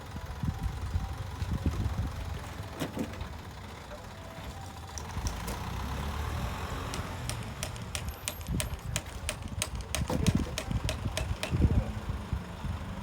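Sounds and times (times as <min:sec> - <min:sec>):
low engine rumble: 0:00.0 - 0:13.0
stone and tool knocks: 0:06.9 - 0:11.6.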